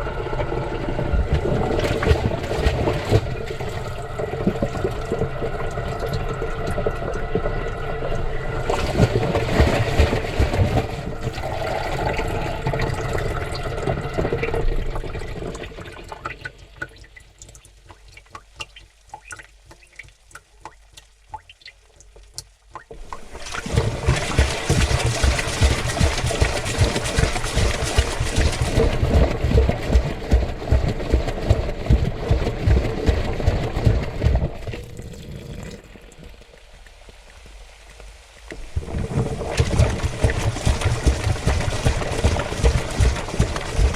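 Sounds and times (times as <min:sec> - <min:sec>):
water sloshing in washing machine: 0:00.0 - 0:36.4, 0:38.6 - 0:43.9
water drips and small splashes: 0:01.2 - 0:43.9.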